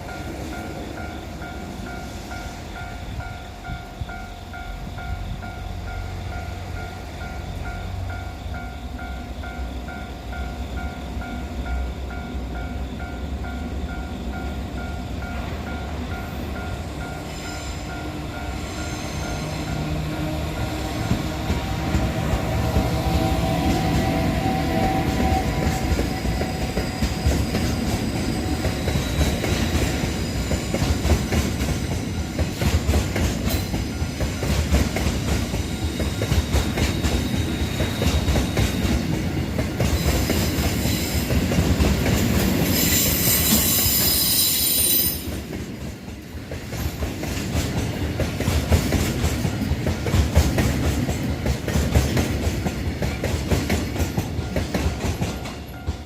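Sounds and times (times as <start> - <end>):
train wheels clattering: 0.0 - 56.0
wheel squeal: 42.7 - 45.3.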